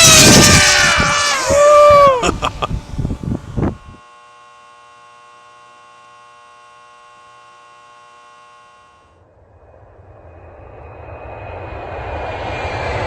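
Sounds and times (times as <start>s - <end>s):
steady electrical hum: 0.0s - 9.6s.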